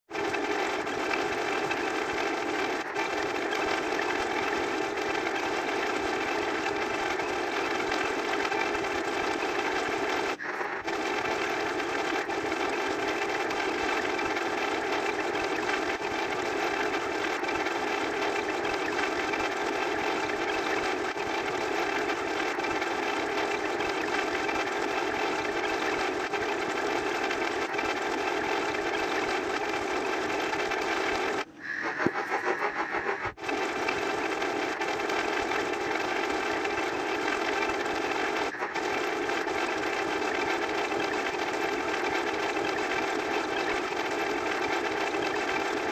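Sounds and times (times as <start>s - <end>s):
rapid pulsing: 0.1s - 45.9s.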